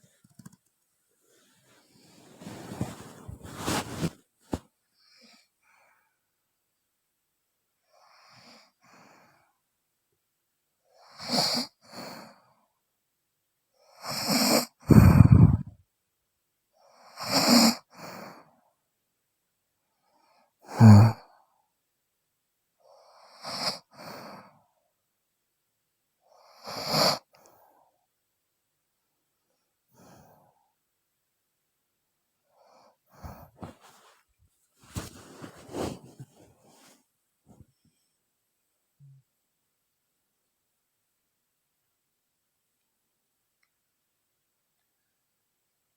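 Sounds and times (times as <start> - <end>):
woman snoring: 14.0 - 15.7, 20.7 - 21.3
loud deep snorts: 14.9 - 15.7.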